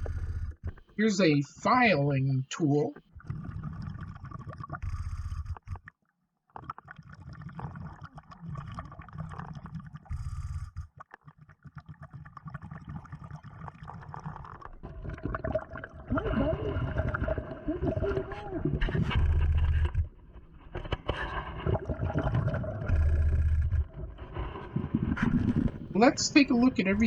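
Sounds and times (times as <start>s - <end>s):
exhaled bubbles hissing: 3.2s - 5.8s, 6.6s - 10.8s, 11.7s - 20.0s, 20.9s - 27.0s
low underwater rumble: 14.8s - 27.0s.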